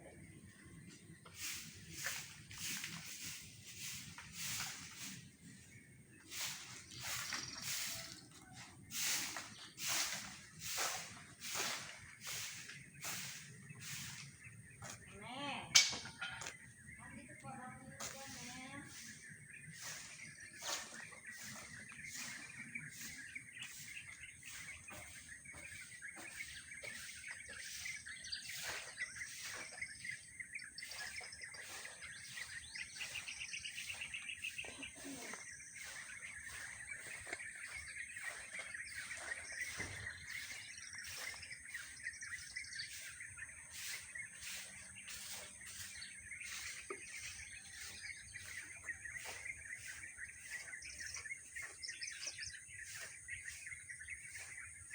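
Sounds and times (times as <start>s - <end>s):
birds chirping and twittering: 0.0s - 54.9s
bird trill: 17.8s - 54.9s.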